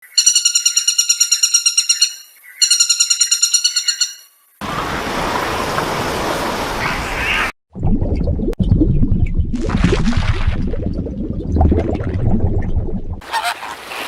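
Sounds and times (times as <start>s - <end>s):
high-pitched trilled call: 0.0s - 4.3s.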